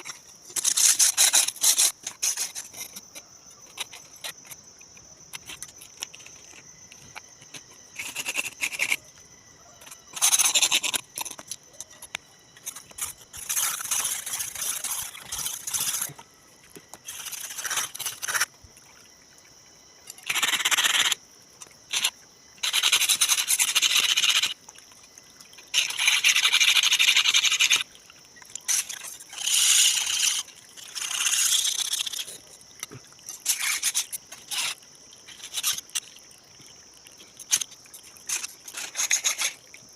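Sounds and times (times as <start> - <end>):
faint high insect drone: 0.0 - 39.9
blade being scraped: 0.6 - 3.1, 12.7 - 16.2.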